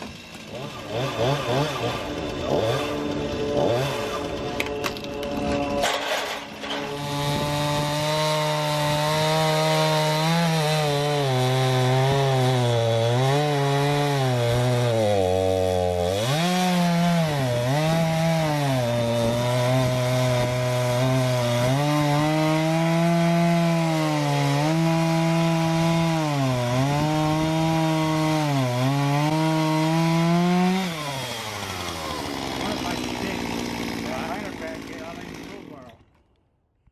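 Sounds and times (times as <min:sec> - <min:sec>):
chainsaw cutting wood: 0:00.0 - 0:36.5.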